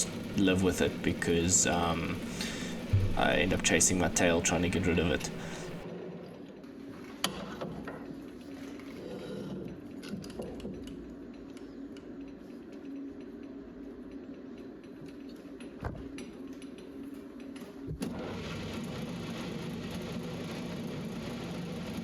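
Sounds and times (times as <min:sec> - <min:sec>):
lathe cutting chatter: 0:00.0 - 0:05.8
lathe knock: 0:00.0 - 0:05.8
metal lathe humming: 0:00.0 - 0:05.8.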